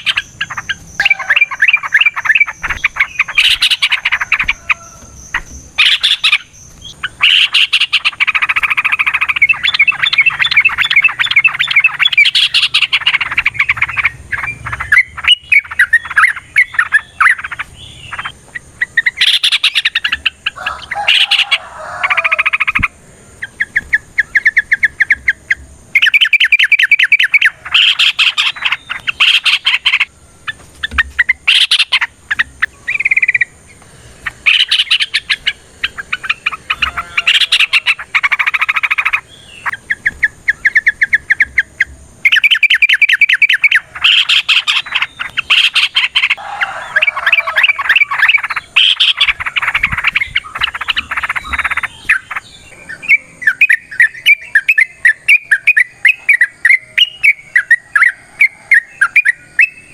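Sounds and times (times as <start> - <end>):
bulbul chattering song: 0.0 - 59.9.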